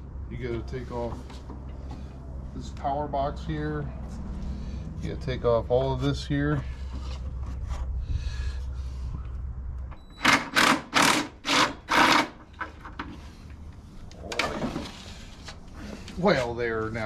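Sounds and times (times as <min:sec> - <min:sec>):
low hum: 0:00.0 - 0:10.2.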